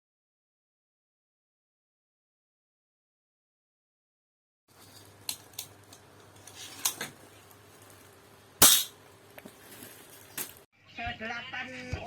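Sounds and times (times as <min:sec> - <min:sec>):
loud sharp gunshot: 0:08.6 - 0:08.9.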